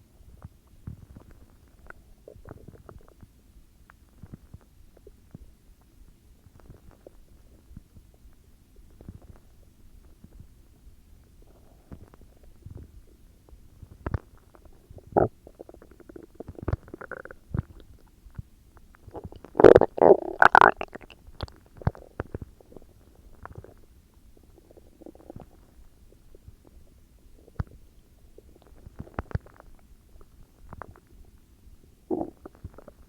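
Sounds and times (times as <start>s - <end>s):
stomach growling: 0.9s - 3.3s, 13.8s - 18.1s, 18.9s - 31.1s, 32.1s - 33.0s.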